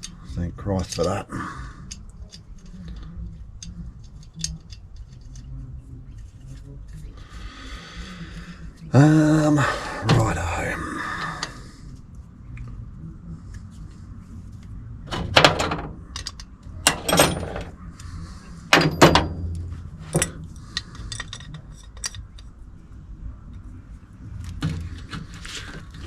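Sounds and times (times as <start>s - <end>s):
light clicks and rattles: 1.8s - 7.0s, 14.5s - 22.6s
metal tools clanking: 15.1s - 17.8s, 18.7s - 22.4s.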